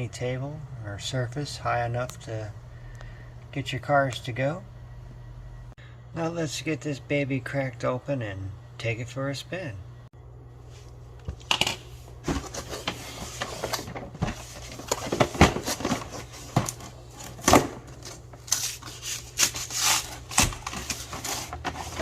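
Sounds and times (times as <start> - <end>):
packaging rustling and scraping: 12.2 - 22.0
packaging ripping: 18.4 - 21.5.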